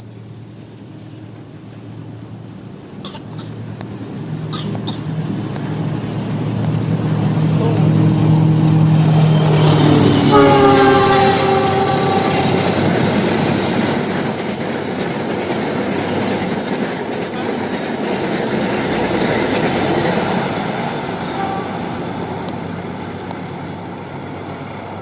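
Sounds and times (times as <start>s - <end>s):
train carriages rumbling and clattering: 1.0s - 25.0s
train horn blast: 7.7s - 13.2s, 21.2s - 22.1s.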